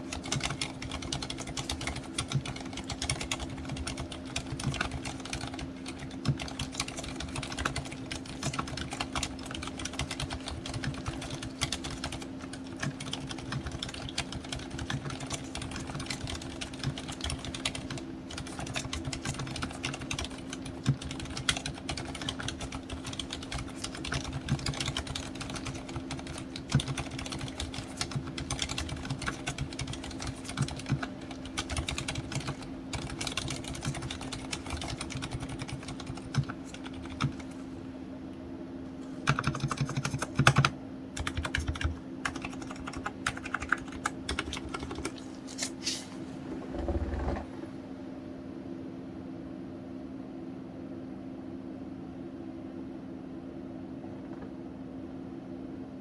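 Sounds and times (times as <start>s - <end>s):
fast typing on mechanical keyboard: 0.0s - 37.5s, 39.2s - 45.2s.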